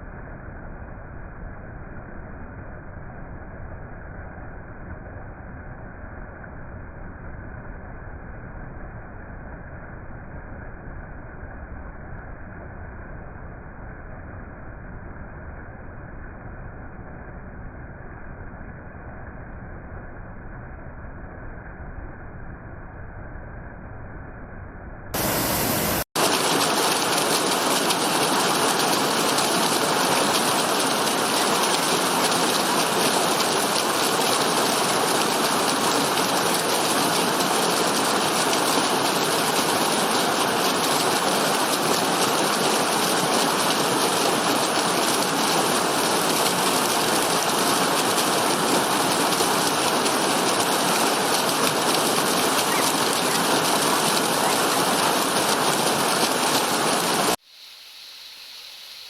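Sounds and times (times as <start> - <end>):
waterfall rushing and splashing: 25.2 - 59.0.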